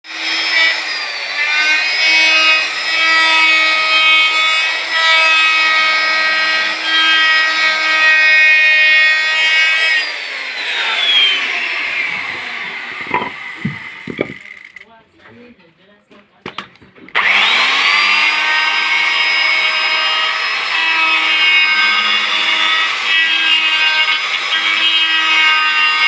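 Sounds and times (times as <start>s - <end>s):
power tool whining: 0.1s - 14.9s, 17.1s - 26.0s
short knocks: 12.0s - 14.5s.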